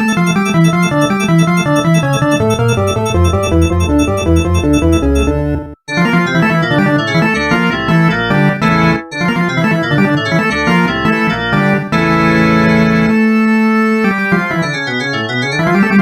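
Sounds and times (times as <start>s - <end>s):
synthesized phone ringtone music: 0.0s - 7.4s.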